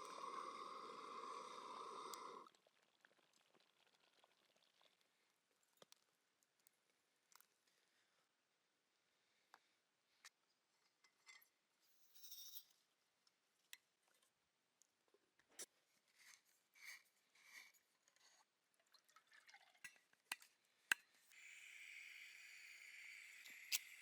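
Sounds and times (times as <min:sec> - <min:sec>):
steady hiss: 0:21.4 - 0:24.0.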